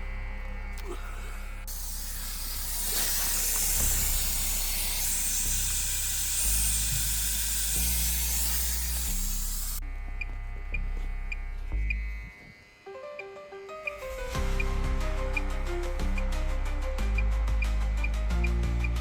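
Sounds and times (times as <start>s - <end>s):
loud steady hiss: 1.6s - 9.8s
music with stepping bass line: 14.4s - 19.0s.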